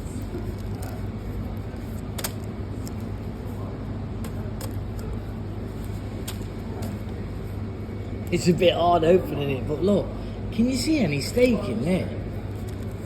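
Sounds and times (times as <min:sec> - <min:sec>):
paper bag crackling: 0:00.0 - 0:03.6.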